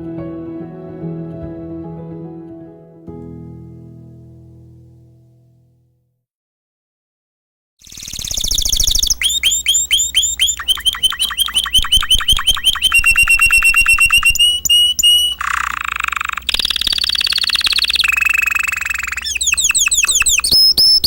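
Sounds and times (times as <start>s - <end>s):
canary singing: 7.8s - 21.0s.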